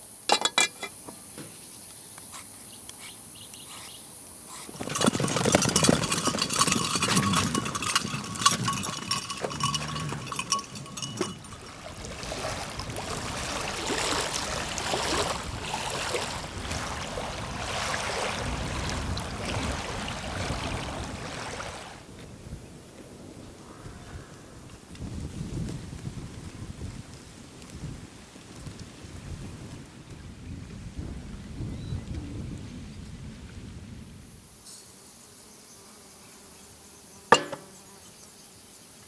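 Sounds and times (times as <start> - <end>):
metal clinking and rattling: 0.3 - 1.5, 4.6 - 11.9, 37.3 - 37.8.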